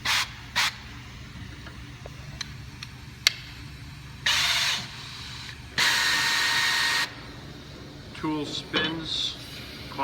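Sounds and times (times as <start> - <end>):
tool motor whirring: 4.2 - 7.2.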